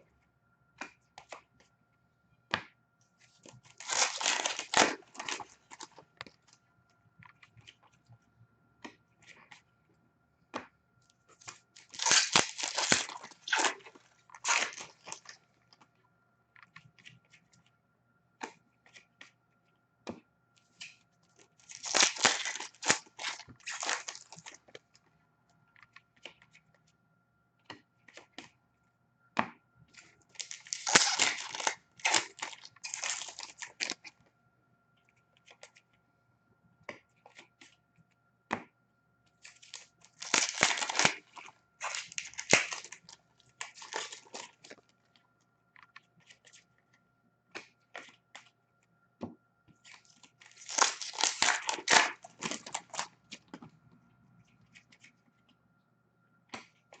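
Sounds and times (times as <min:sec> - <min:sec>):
card pack wrappers ripping: 0:03.7 - 0:06.0, 0:11.4 - 0:15.4, 0:21.6 - 0:24.6, 0:30.3 - 0:34.0, 0:39.4 - 0:44.8, 0:49.9 - 0:53.2.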